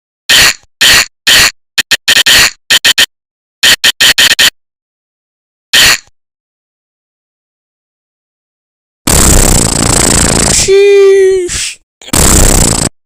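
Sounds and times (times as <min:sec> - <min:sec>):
distorted static noise bursts: 0:09.1 - 0:10.7, 0:12.0 - 0:13.0.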